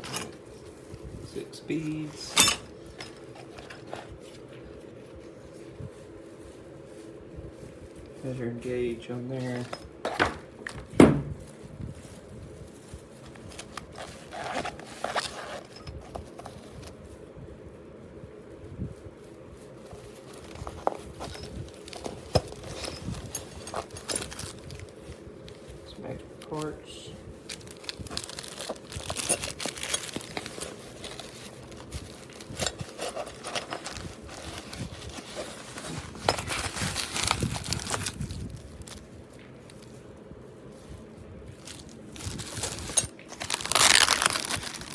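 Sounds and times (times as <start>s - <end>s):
plastic packaging crinkling: 0.0s - 17.3s, 19.0s - 44.9s
knocks and clicks of tool handling: 10.0s - 11.4s.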